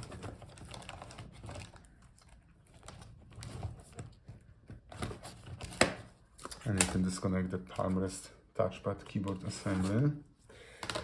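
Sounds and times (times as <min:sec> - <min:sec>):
laptop parts clicking and rustling: 0:00.0 - 0:07.2, 0:10.8 - 0:11.0.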